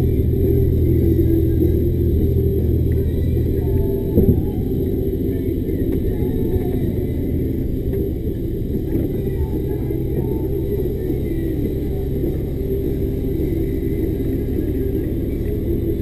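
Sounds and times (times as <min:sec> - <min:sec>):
lorry diesel engine running: 0:00.0 - 0:16.0.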